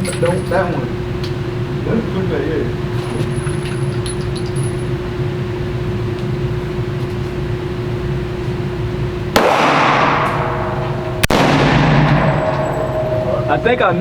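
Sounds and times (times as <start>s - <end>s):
steady hum: 0.0s - 14.0s
pistol shot with echo: 9.4s - 13.2s.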